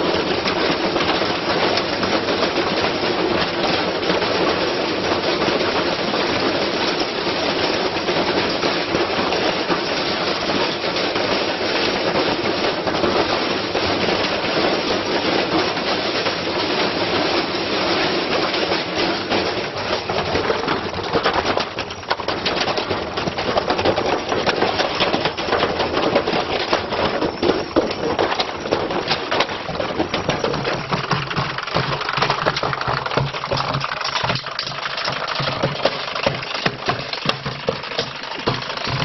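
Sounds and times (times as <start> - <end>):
washing machine clattering: 0.0 - 39.0.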